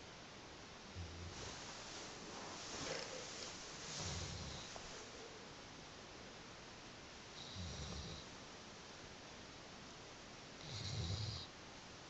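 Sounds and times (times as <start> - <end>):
steady hiss: 0.0 - 12.0
dog snoring: 2.9 - 4.8, 7.4 - 8.3, 10.6 - 11.5.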